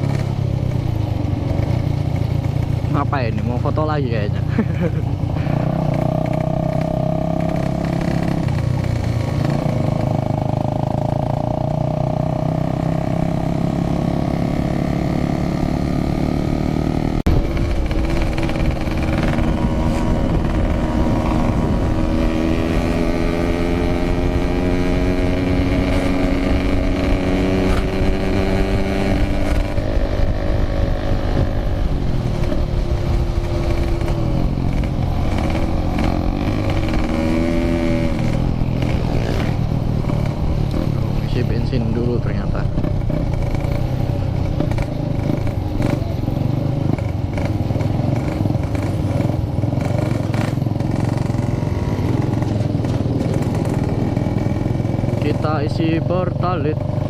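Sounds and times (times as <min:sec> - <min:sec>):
motorcycle two-stroke engine running: 0:00.0 - 0:57.0.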